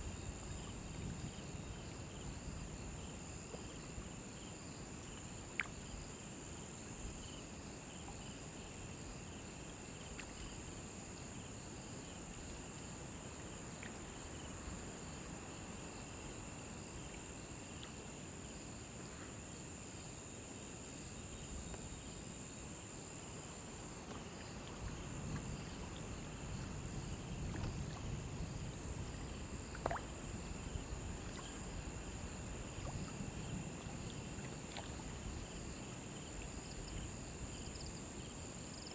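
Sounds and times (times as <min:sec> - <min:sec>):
crickets chirping: 0:00.0 - 0:38.9
lower insect trill: 0:00.0 - 0:38.9
river water rumble: 0:22.4 - 0:38.7.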